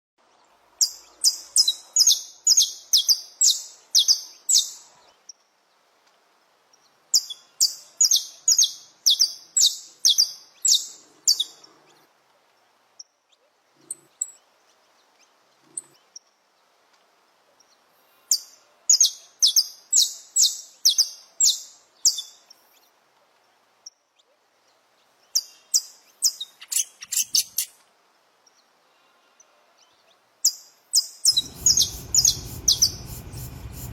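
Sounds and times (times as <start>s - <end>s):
finch singing sharp notes: 31.3s - 33.9s.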